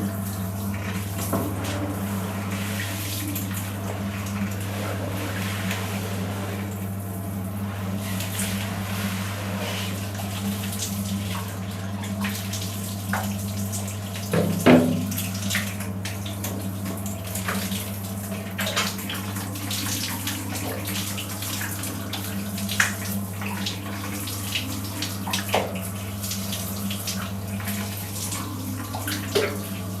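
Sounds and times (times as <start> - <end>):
water running from a shower: 0.0 - 30.0
splashes and knocks: 14.3 - 15.2.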